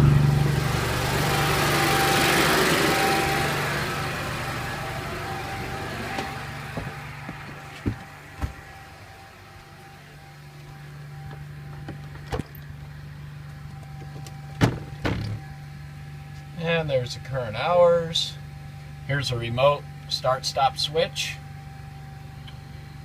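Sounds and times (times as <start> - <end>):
generator engine humming: 0.0 - 23.0.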